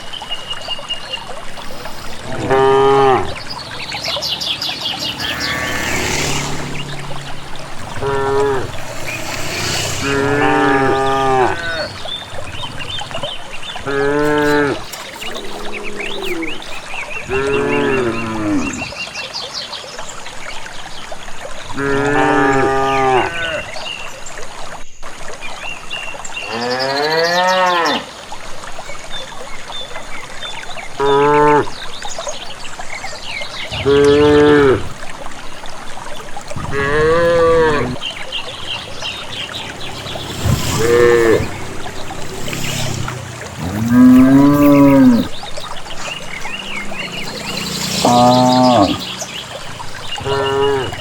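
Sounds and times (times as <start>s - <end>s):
cattle mooing: 2.3s - 3.4s, 5.1s - 12.6s, 13.9s - 14.8s, 36.6s - 38.0s, 39.2s - 45.3s.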